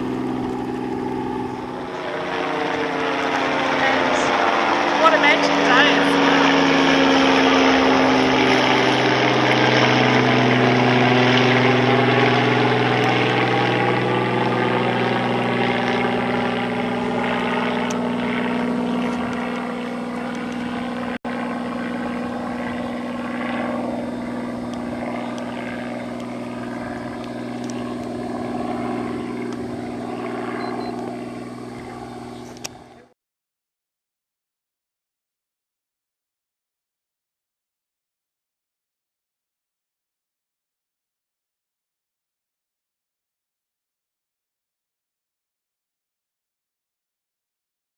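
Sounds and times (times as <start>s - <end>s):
helicopter engine and rotor: 0.0s - 33.2s.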